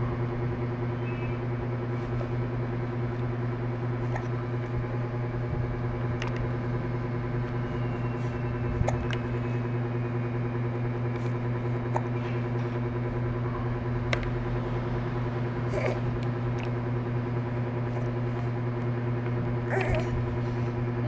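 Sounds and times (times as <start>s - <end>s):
low machine hum: 0.0s - 21.0s
baby hiccuping: 15.7s - 16.0s, 19.7s - 20.1s.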